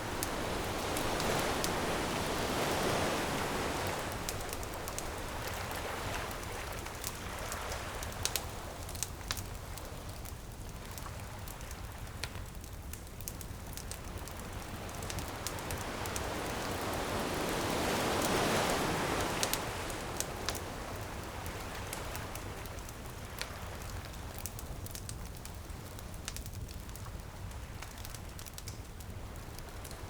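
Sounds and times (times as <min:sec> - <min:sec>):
surf rushing: 0:00.0 - 0:06.8, 0:15.6 - 0:21.2
bonfire crackling and popping: 0:00.0 - 0:30.0.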